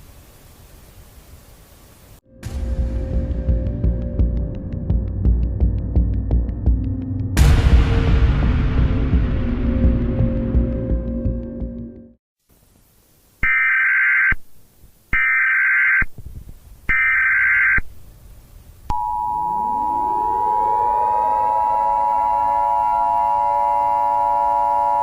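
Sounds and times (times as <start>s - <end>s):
music: 2.3s - 12.2s
screeching data bursts: 16.9s - 17.9s
rising tones sustained chord: 18.9s - 25.0s
two-tone attention signal: 18.9s - 25.0s.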